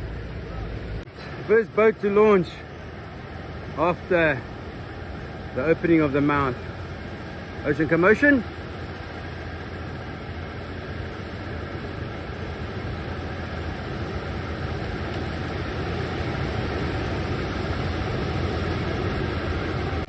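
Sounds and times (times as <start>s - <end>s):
constant rushing noise: 0.0s - 20.0s
outboard engines humming: 0.0s - 20.0s.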